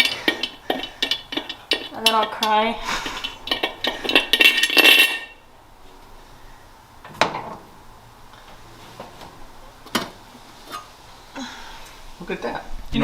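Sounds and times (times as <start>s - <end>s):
light metal clinking and rattling: 0.0s - 5.4s.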